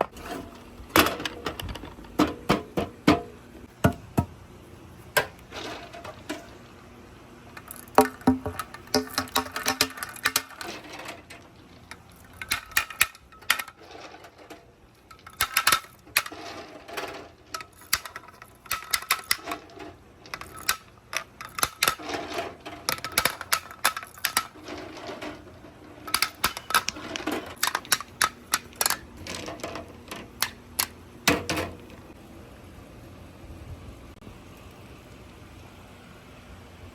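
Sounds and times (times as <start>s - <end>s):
marbles clattering down marble run: 7.5s - 31.9s
marbles ringing off metal: 7.5s - 32.0s.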